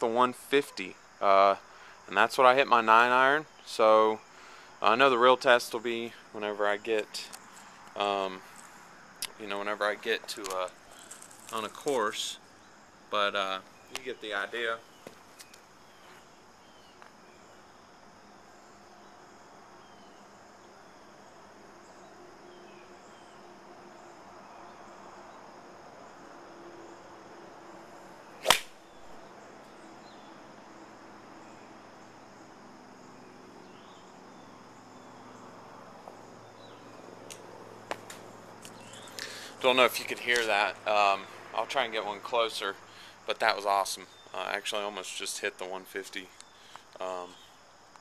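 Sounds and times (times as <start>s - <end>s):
insects chirping: 0.0s - 48.0s
golf club striking ball: 28.4s - 29.2s.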